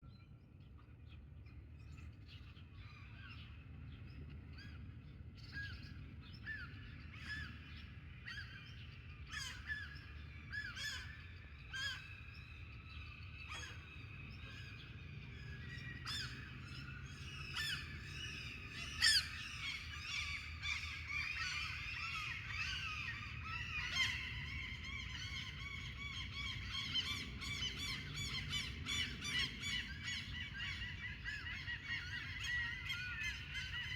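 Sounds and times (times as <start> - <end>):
birds chirping in dawn chorus: 12.9 - 33.9.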